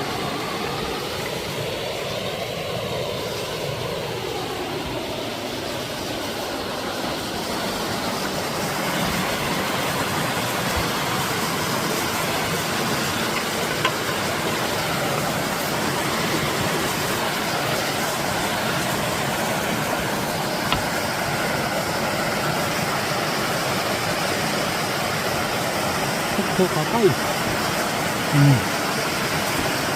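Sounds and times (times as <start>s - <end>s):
waterfall rushing: 6.6s - 29.9s.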